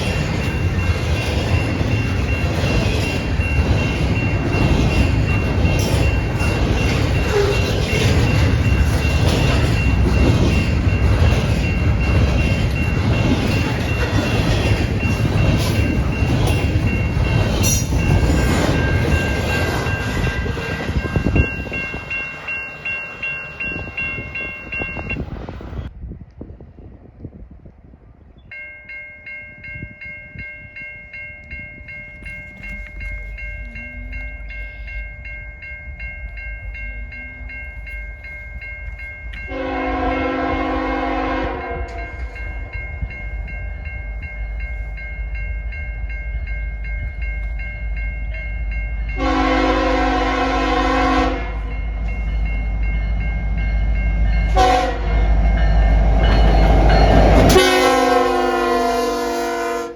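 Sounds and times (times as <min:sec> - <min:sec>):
crossing bell ringing: 0:00.0 - 0:25.9, 0:28.4 - 0:59.9
train rumble: 0:00.0 - 0:59.9
locomotive horn blasts: 0:39.5 - 0:42.1, 0:49.2 - 0:51.7, 0:54.5 - 0:55.2, 0:57.4 - 0:59.9.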